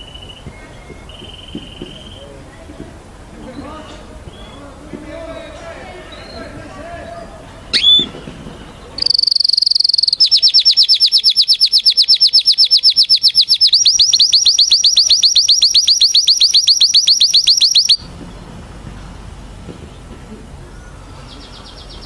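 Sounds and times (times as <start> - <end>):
canary singing: 0.0 - 2.4, 9.0 - 18.1.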